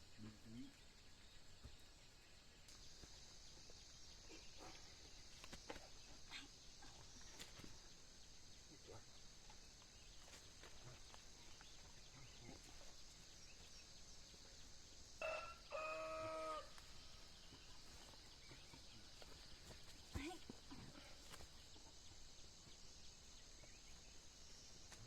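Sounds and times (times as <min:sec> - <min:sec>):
animal call: 0:15.2 - 0:17.0.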